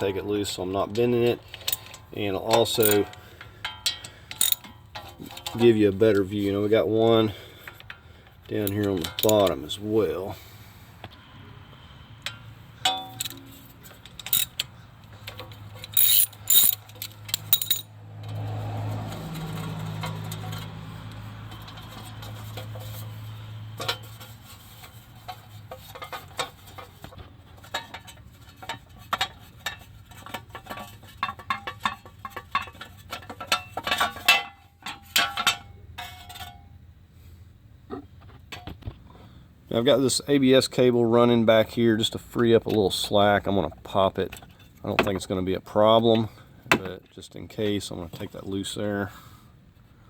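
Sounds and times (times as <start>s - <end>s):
metal tools clinking on steel: 0.8s - 6.2s, 7.7s - 9.8s, 12.3s - 18.4s.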